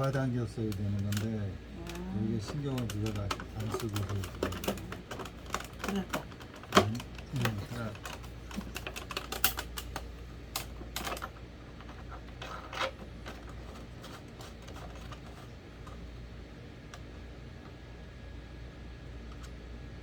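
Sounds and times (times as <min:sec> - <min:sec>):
plastic parts clicking: 0:00.0 - 0:11.3
faint low hum: 0:00.0 - 0:20.0.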